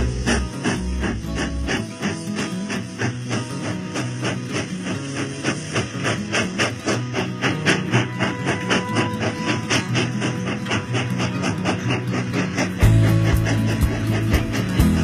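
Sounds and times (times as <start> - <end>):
music with percussive beat and bass: 12.7 - 15.0.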